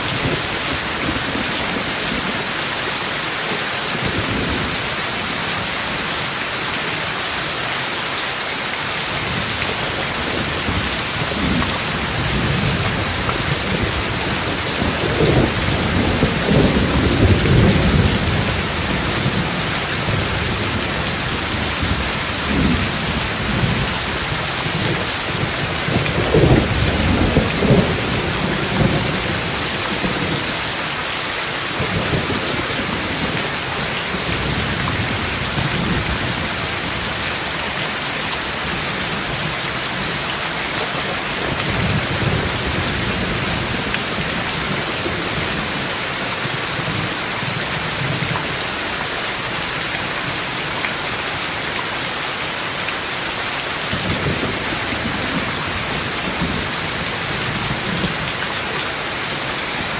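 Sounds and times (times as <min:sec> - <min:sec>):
heavy rain: 0:00.0 - 0:59.9
thunder rumbling: 0:09.3 - 0:30.6.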